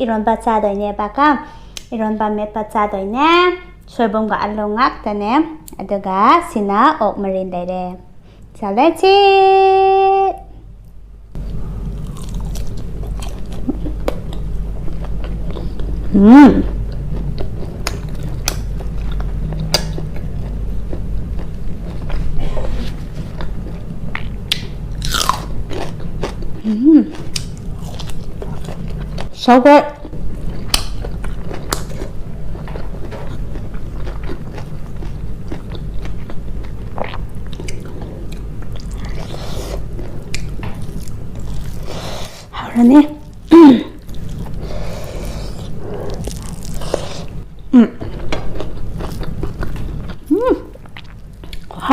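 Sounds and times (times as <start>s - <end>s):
low steady hum: 0.0s - 51.9s
chewing and biting: 11.4s - 16.1s, 16.7s - 29.4s, 30.0s - 42.4s, 43.3s - 47.4s, 48.1s - 51.8s
person humming: 16.1s - 16.7s, 26.6s - 27.1s, 47.7s - 48.1s.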